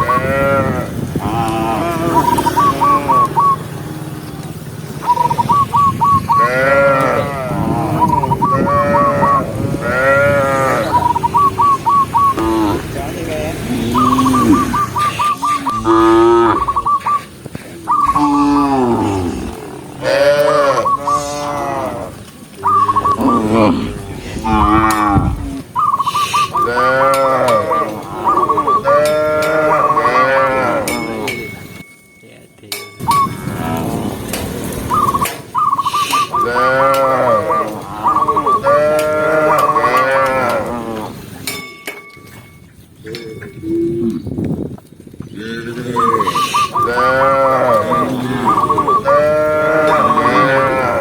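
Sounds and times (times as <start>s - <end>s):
cow mooing: 0.0s - 5.4s, 6.3s - 11.7s, 12.3s - 17.2s, 17.9s - 25.8s, 26.6s - 31.6s, 33.2s - 34.5s, 36.3s - 41.2s, 45.3s - 51.0s
rapid warbling call: 1.2s - 9.7s, 10.4s - 31.8s, 33.0s - 33.8s, 34.8s - 40.2s, 45.7s - 51.0s.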